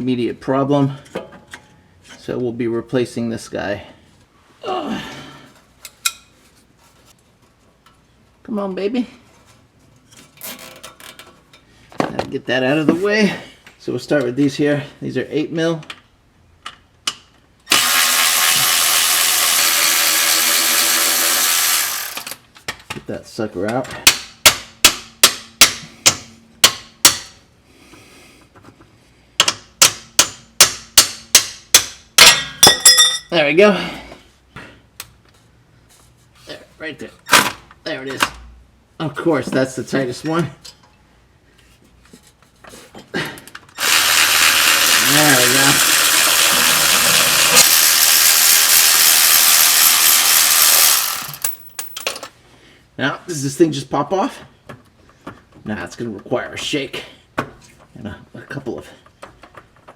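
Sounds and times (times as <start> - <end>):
hand ratchet clicking: 17.7 - 22.4, 43.8 - 52.0.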